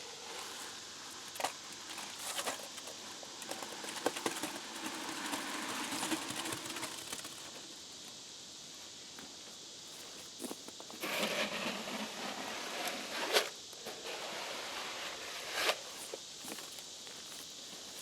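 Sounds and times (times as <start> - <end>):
wet concrete scraping in bucket: 1.3 - 7.5, 11.0 - 16.1
concrete dumped into blocks: 11.0 - 15.9.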